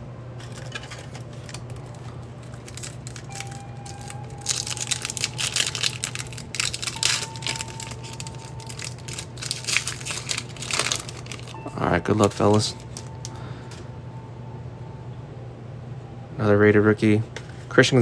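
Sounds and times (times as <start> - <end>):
foil wrappers crinkling: 0.4 - 13.4.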